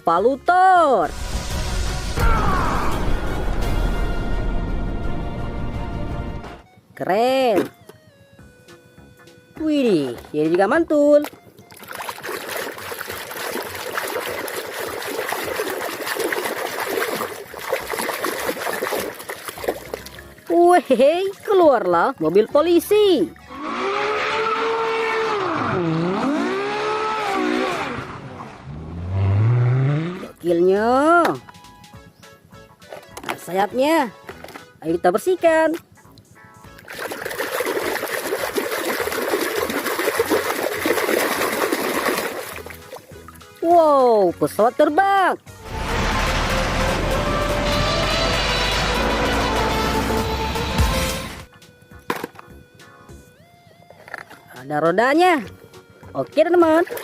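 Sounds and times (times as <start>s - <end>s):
water splashing and trickling: 9.8s - 23.6s, 32.8s - 44.7s, 56.1s - 57.0s.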